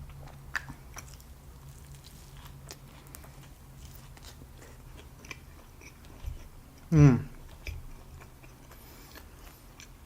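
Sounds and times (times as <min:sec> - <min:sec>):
close chewing with mouth clicks: 0:00.0 - 0:10.0
low steady hum: 0:00.0 - 0:10.0.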